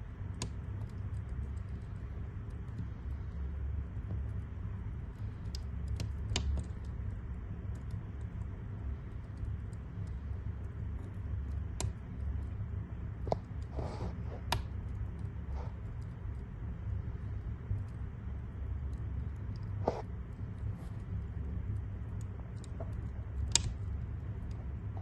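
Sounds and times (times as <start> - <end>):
wood fire crackling: 0.0 - 25.0
fire hissing: 13.2 - 16.0, 19.6 - 21.2.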